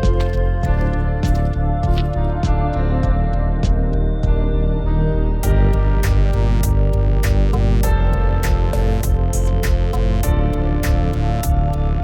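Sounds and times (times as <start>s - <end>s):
sustained instrumental chords: 0.0s - 12.0s.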